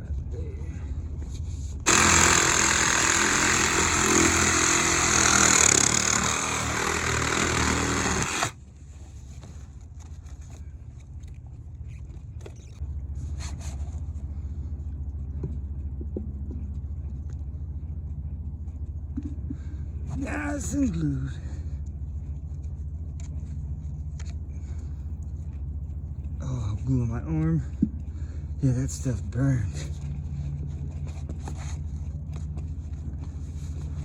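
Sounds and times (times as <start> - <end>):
engine humming: 0.0 - 8.7
power saw cutting plastic pipe: 1.9 - 8.6.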